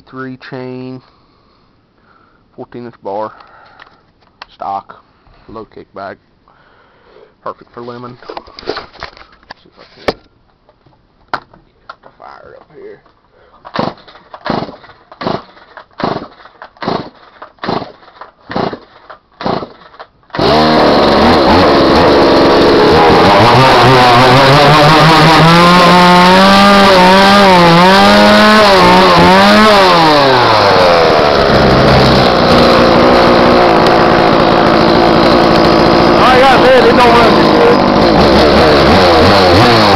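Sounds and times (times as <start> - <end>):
chainsaw engine revving and idling: 13.7 - 39.9.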